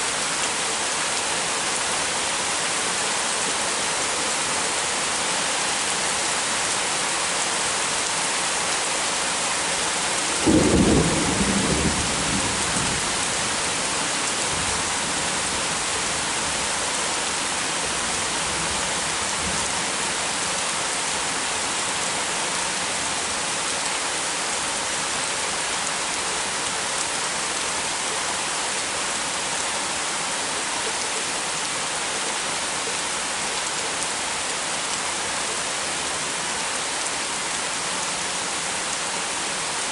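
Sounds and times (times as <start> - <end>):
heavy rain: 0.0 - 39.9
thunderclap rumbling: 10.4 - 13.0.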